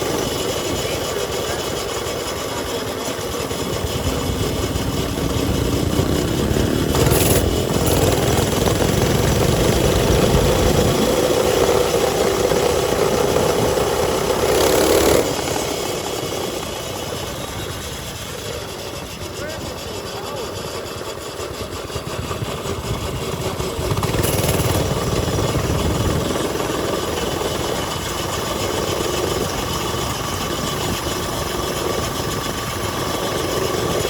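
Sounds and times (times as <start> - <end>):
small engine revving: 0.0 - 20.9, 22.7 - 27.8.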